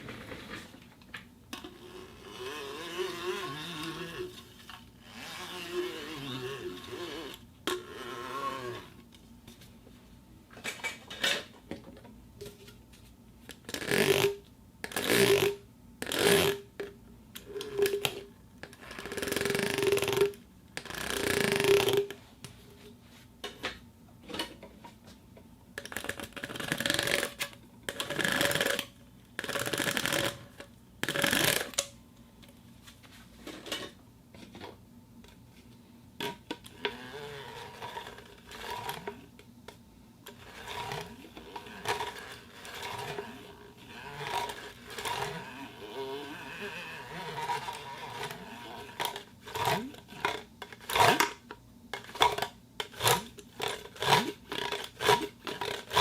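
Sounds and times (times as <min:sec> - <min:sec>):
plastic tube twisting squeaks: 0:01.5 - 0:09.1, 0:13.5 - 0:16.7, 0:17.4 - 0:22.2, 0:25.8 - 0:31.9, 0:36.2 - 0:39.3, 0:40.3 - 0:51.4, 0:52.0 - 0:56.0.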